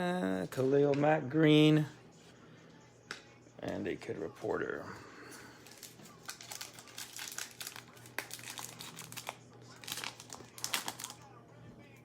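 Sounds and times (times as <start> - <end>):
foil wrapper crinkling: 5.6 - 11.2.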